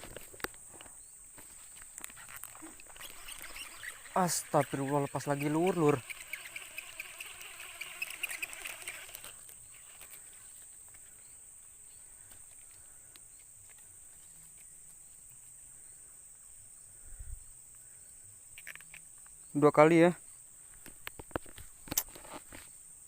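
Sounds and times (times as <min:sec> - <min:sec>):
rustling: 0:00.0 - 0:15.6
insects droning: 0:00.0 - 0:23.0.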